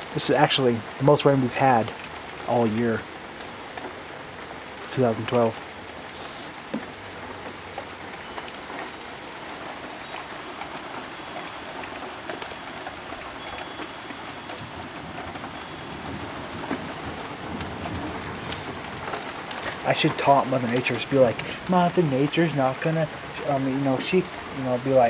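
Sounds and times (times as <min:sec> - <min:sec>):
heavy rain pouring: 0:00.0 - 0:25.0.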